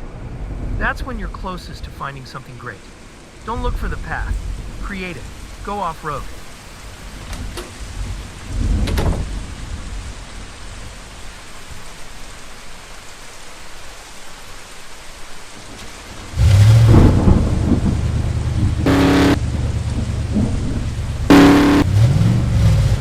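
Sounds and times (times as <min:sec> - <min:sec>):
thunder rumble: 0:00.0 - 0:02.0, 0:03.4 - 0:05.7, 0:06.3 - 0:11.7, 0:15.6 - 0:23.0
steady rain: 0:00.0 - 0:23.0
loud deep steady rumble: 0:16.4 - 0:23.0.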